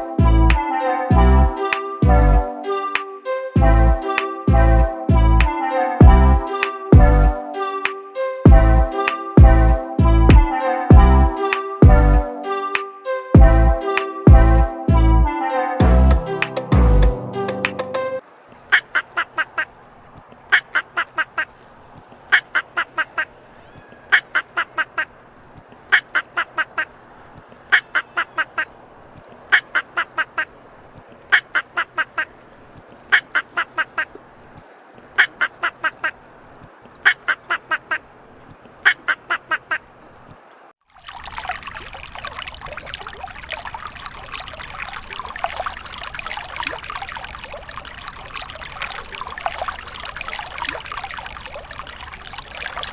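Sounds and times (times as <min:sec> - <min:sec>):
running water rushing: 0:08.4 - 0:12.5, 0:40.0 - 0:52.9
duck quacking: 0:35.2 - 0:36.2.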